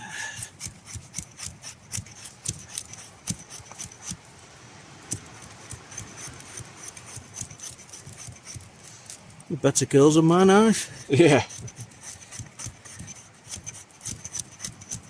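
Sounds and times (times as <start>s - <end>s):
knife shaving wet wood: 0.0s - 9.5s, 10.2s - 15.0s.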